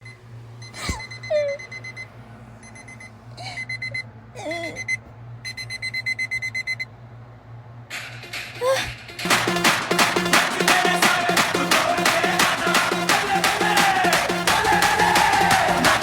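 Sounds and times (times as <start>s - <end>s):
alarm clock beeping: 0.0s - 4.1s, 4.8s - 6.9s.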